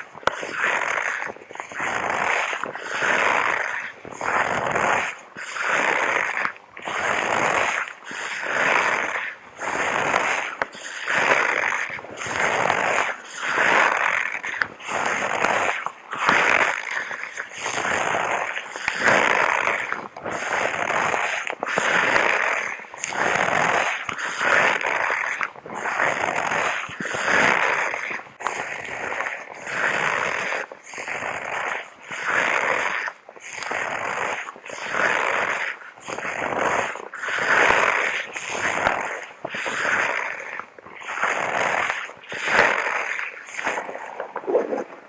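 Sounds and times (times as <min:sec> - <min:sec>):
person breathing heavily: 0:28.4 - 0:30.7.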